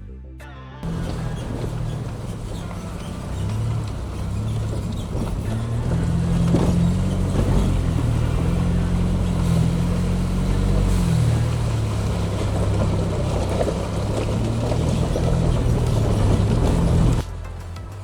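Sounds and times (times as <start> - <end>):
car engine running: 0.8 - 18.0.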